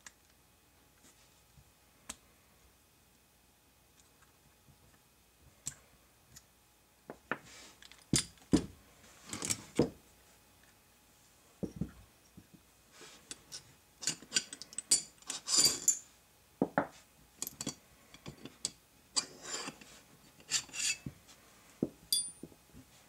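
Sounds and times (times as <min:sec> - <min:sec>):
metal scrapes: 0:19.2 - 0:21.1.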